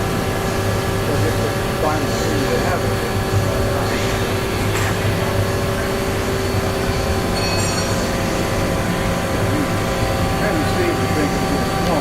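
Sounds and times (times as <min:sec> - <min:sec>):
lathe machine hum with whine tones: 0:00.0 - 0:12.0.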